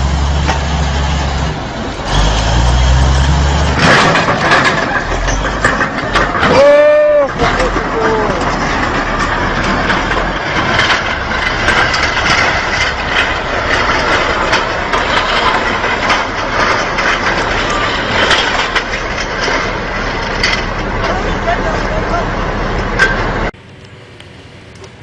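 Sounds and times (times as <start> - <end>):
heavy machinery running: 0.0 - 24.7
clattering knocks: 3.6 - 21.2.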